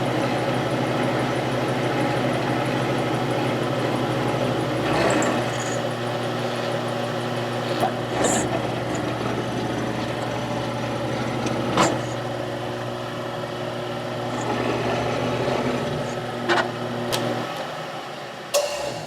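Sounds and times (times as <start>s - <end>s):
milling machine motor hum: 0.0s - 19.0s.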